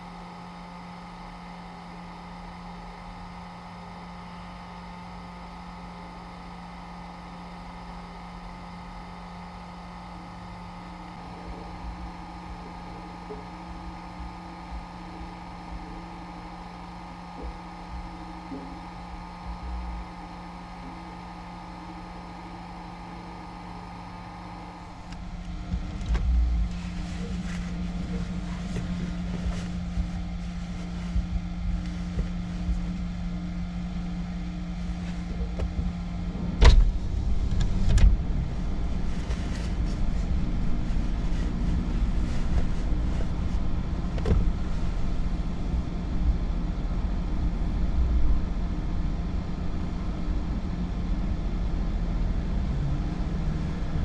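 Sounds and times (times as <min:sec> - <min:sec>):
car road rumble: 0:23.4 - 0:33.4.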